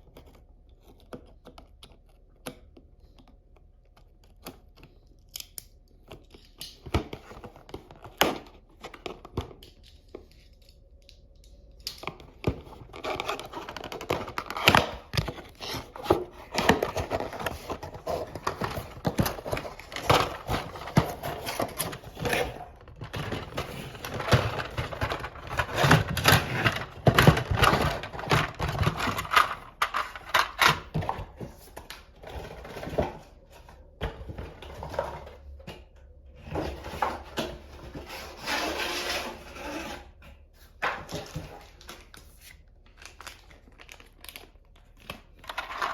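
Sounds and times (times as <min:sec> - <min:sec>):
plastic parts clicking: 0:08.9 - 0:31.2
packaging rustling and crinkling: 0:11.6 - 0:35.6, 0:40.6 - 0:45.9.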